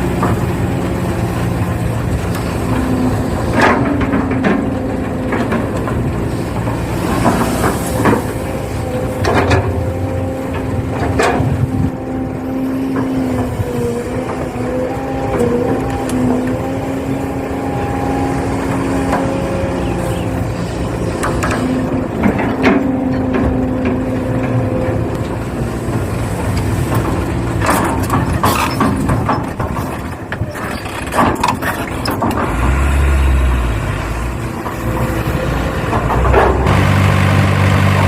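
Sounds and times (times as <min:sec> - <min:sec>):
bucket scraping and clattering sand: 0:06.3 - 0:09.2.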